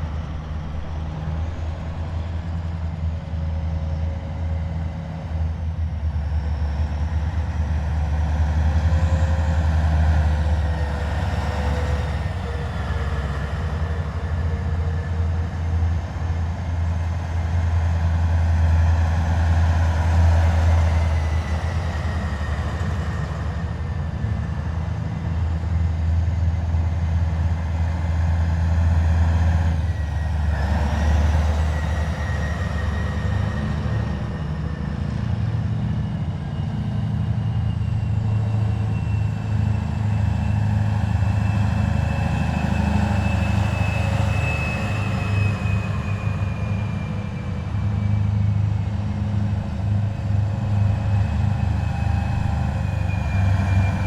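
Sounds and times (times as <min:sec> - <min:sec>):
heavy vehicles engine rumble: 0:00.0 - 0:54.0
faint whine sliding in pitch: 0:28.1 - 0:54.0.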